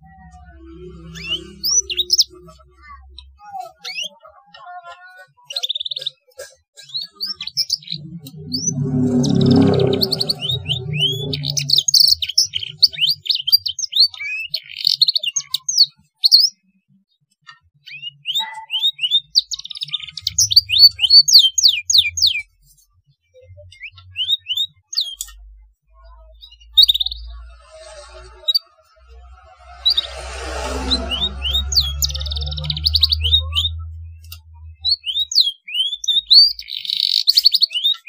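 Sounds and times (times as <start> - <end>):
canary singing: 0.0 - 4.2, 6.9 - 15.7, 17.8 - 22.6, 26.3 - 38.0.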